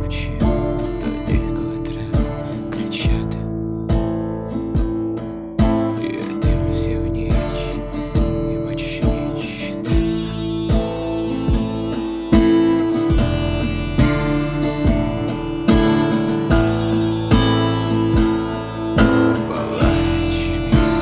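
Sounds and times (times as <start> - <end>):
strummed acoustic guitar: 0.0 - 21.0
steady drum beat: 3.9 - 5.9, 8.2 - 21.0.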